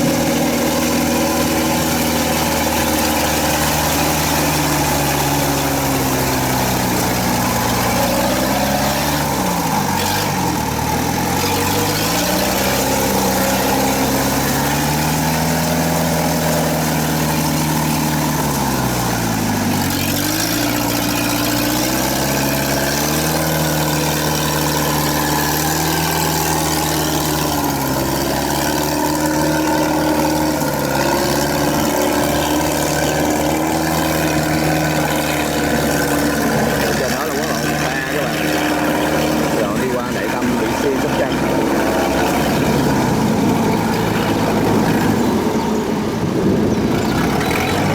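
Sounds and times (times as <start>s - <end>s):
combine harvester diesel engine: 0.0s - 47.9s.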